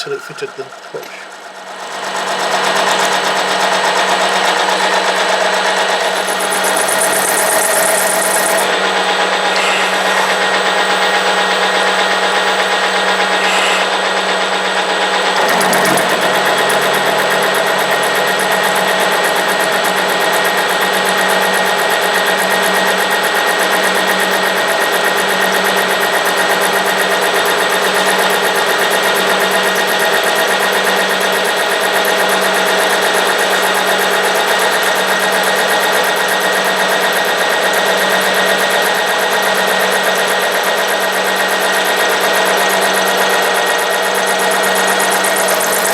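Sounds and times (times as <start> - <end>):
milling machine whining: 0.0 - 45.9.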